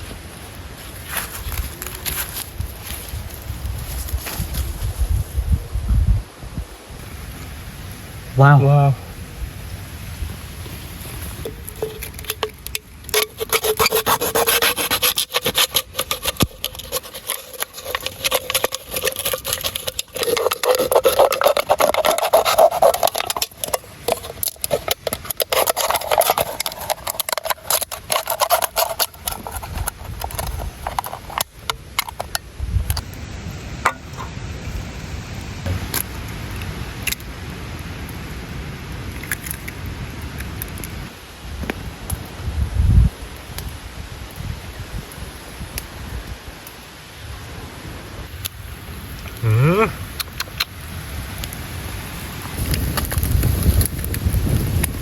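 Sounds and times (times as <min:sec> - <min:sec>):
knocks and handling: 0:11.4 - 0:33.0
sawing strokes on wood: 0:13.1 - 0:31.4.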